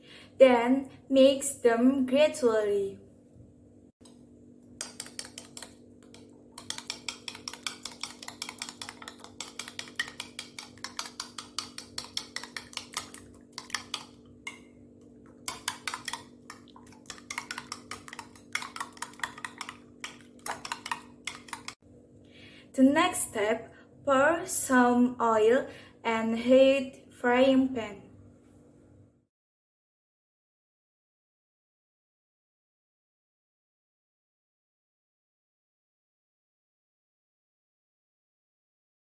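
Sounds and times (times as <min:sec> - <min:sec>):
utensil beating eggs in bowl: 0:04.0 - 0:21.8.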